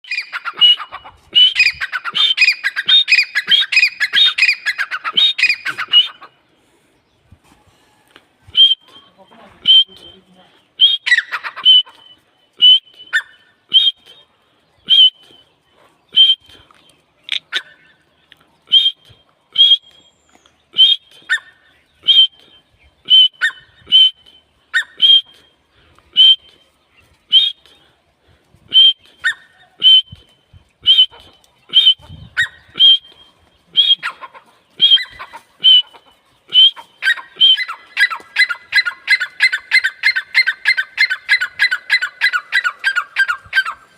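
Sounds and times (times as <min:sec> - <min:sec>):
partridge calling: 0:00.0 - 0:06.4, 0:08.6 - 0:14.0, 0:23.0 - 0:25.3, 0:30.8 - 0:43.9.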